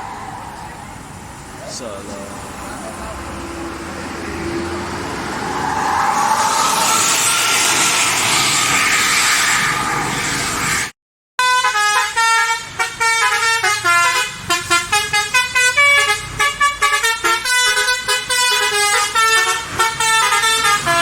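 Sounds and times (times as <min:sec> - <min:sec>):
musical bus air horns: 0:10.6 - 0:21.0.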